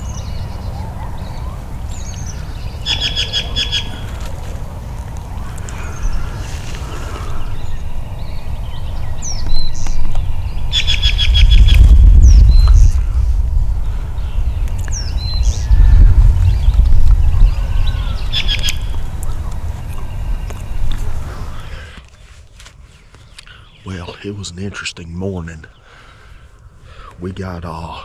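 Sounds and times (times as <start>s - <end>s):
bird trills: 0.0s - 4.5s, 5.3s - 12.9s, 13.6s - 22.0s
wind buffeting microphone: 0.0s - 22.0s.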